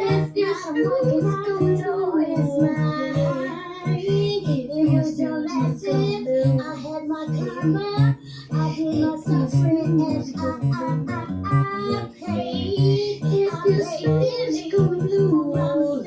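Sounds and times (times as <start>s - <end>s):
high singing voice: 0.0s - 16.0s.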